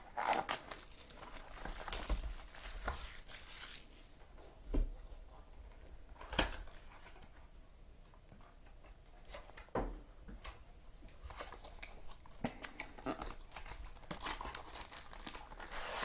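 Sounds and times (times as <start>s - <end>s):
rustling cardboard and wrappers: 0.0s - 4.2s, 11.2s - 16.0s.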